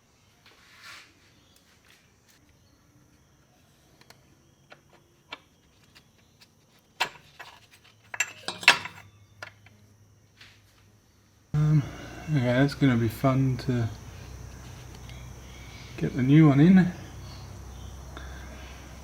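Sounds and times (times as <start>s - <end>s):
metal tools clinking and clattering: 7.0s - 9.5s.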